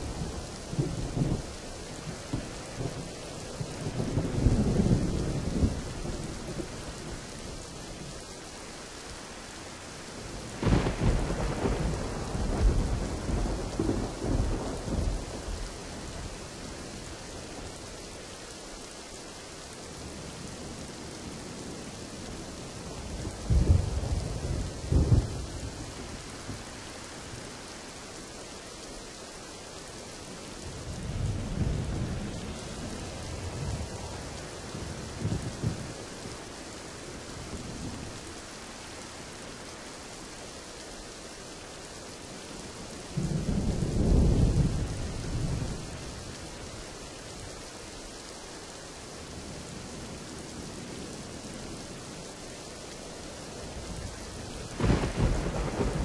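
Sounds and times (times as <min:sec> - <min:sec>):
steady rain: 0:00.0 - 0:56.0
thunder: 0:10.6 - 0:15.4, 0:34.9 - 0:36.0, 0:54.7 - 0:56.0.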